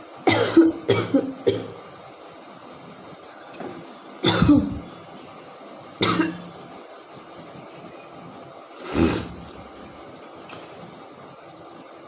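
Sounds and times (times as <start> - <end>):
woman clearing throat: 4.3 - 4.8, 6.0 - 6.4.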